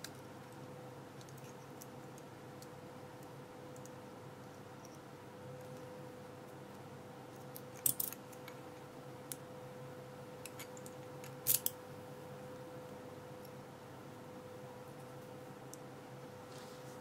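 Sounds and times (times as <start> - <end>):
faint steady hum: 0.0 - 17.0
small metal lock parts clicking: 7.5 - 8.6, 10.4 - 11.8.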